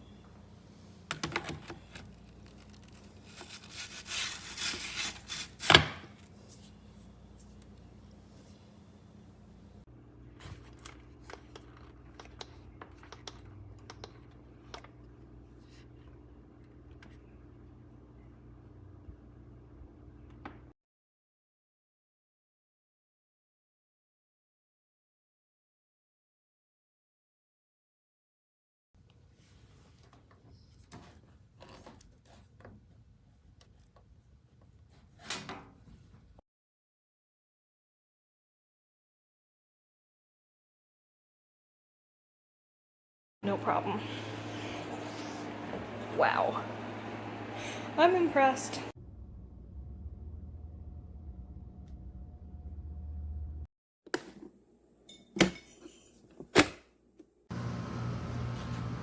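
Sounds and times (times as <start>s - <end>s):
low hum: 43.5s - 53.7s.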